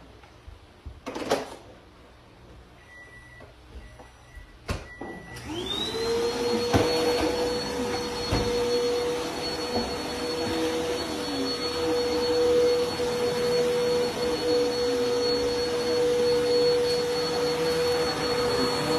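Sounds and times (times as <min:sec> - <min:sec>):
vacuum cleaner motor whine: 0:04.8 - 0:18.9.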